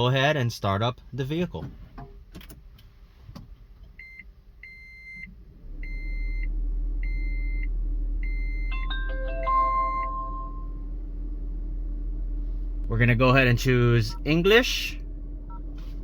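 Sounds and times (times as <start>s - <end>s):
car engine starting and idling: 0.0s - 16.0s
car warning chime beeping: 4.0s - 10.9s, 13.9s - 15.7s.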